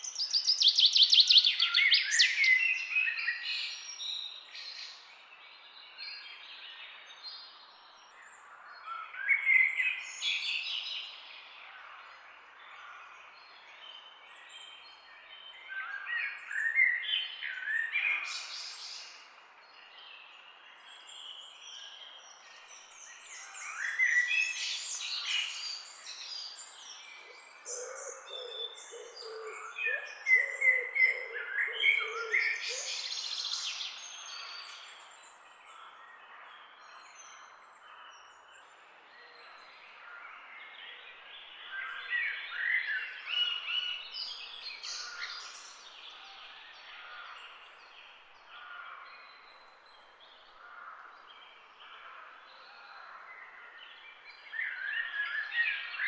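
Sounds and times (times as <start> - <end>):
faint outdoor hiss: 0.0 - 56.0
songbirds chirping and trilling: 0.0 - 56.0.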